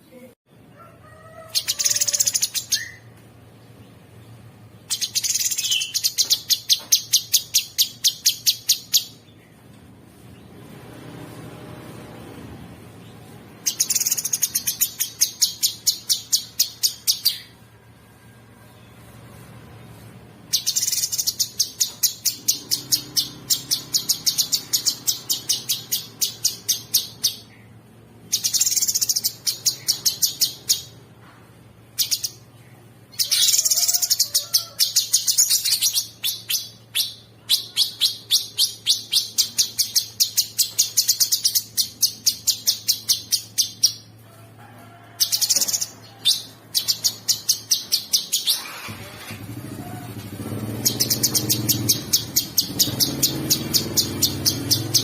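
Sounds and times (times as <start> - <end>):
songbird harsh chattering song: 4.8 - 9.3, 13.7 - 17.6, 20.5 - 31.0, 32.0 - 44.1, 50.8 - 55.0.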